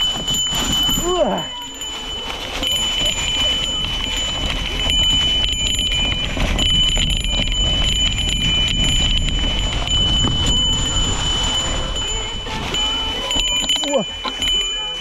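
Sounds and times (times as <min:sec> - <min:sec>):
bicycle bell ringing: 0:00.0 - 0:15.0
tyres rumbling on dirt: 0:00.0 - 0:15.0.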